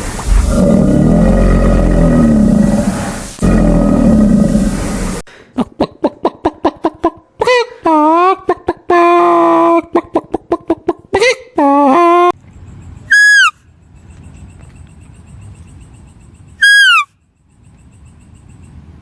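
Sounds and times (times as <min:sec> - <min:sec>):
low animal call with bending pitch: 0:13.1 - 0:13.6, 0:16.6 - 0:17.1
short loud high animal calls: 0:13.1 - 0:13.6, 0:16.6 - 0:17.1.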